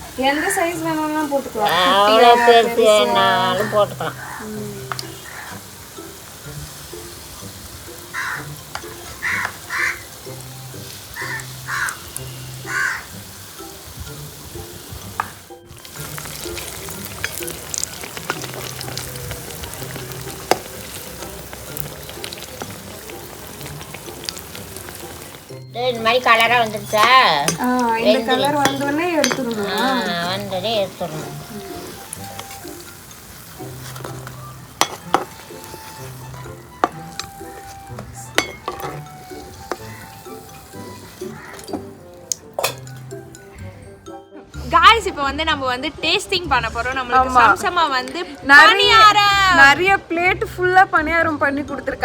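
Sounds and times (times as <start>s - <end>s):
batter deep-frying in hot oil: 0.0s - 43.5s
oil crackling: 0.0s - 43.9s
spoon clinking against pan: 15.0s - 22.9s, 25.9s - 43.6s.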